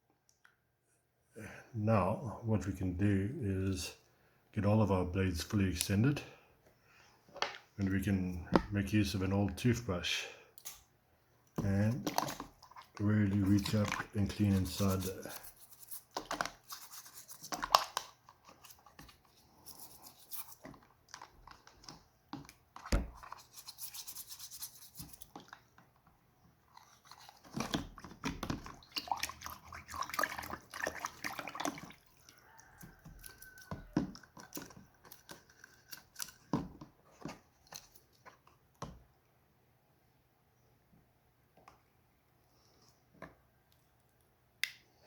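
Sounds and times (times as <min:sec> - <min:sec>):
toothbrush scrubbing: 0:12.6 - 0:20.8, 0:23.2 - 0:25.6, 0:26.7 - 0:27.8.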